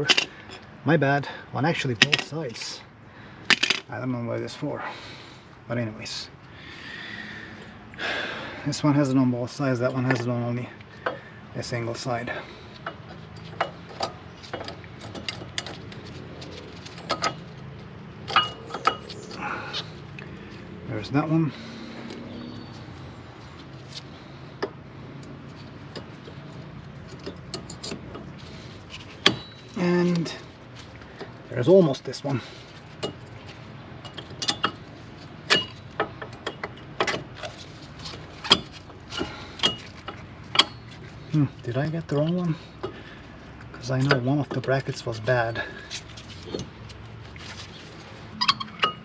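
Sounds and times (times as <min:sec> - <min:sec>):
metallic ring: 0:18.2 - 0:19.3, 0:48.3 - 0:49.0.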